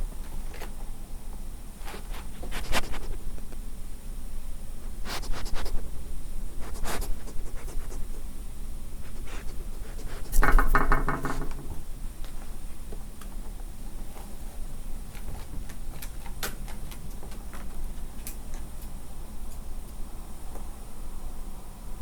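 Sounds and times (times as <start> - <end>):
animal sniffing at microphone: 1.9 - 3.3, 4.9 - 10.4.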